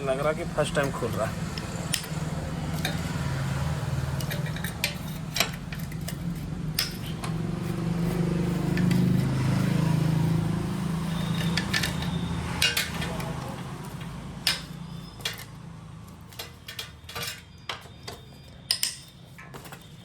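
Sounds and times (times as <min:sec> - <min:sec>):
metallic clicks of hand tools: 0:04.2 - 0:07.4.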